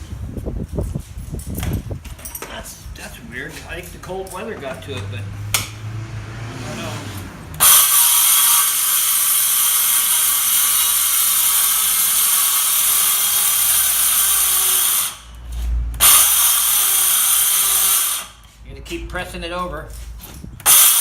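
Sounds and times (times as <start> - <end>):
circular saw cutting board: 6.9 - 15.2.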